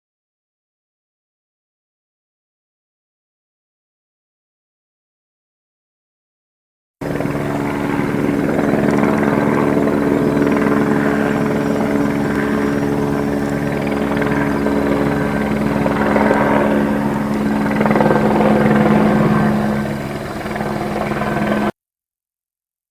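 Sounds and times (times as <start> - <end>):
helicopter flying: 7.0 - 21.7.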